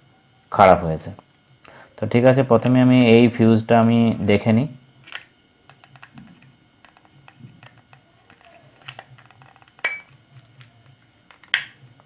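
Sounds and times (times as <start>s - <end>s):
small clicks and scrapes: 5.0s - 11.6s.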